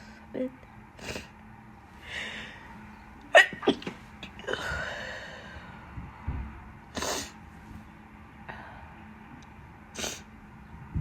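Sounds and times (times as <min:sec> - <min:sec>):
woman's stifled sneezes: 0:03.3 - 0:03.9
breathy exhale: 0:04.5 - 0:05.8.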